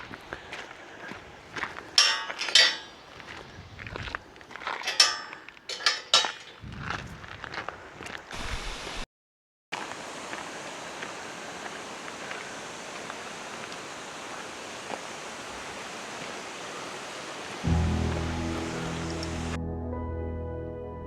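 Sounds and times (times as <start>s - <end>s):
waterfall rushing: 9.8s - 19.6s.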